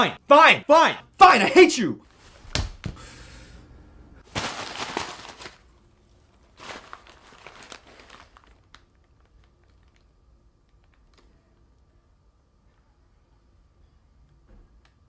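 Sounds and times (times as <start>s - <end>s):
rustling and crinkling: 4.2s - 11.3s.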